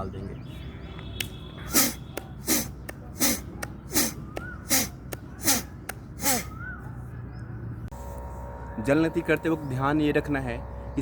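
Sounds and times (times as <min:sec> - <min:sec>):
forceful nasal exhalations: 0:01.6 - 0:06.6.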